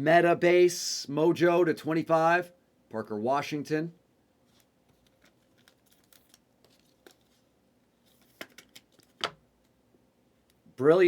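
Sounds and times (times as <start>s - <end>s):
trading cards clicking and shuffling: 4.5s - 7.4s, 8.0s - 9.4s.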